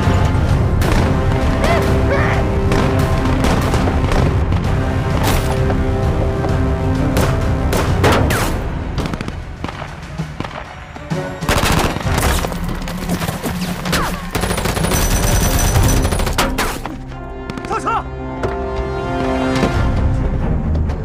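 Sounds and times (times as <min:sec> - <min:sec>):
tense background music: 0:00.0 - 0:21.0.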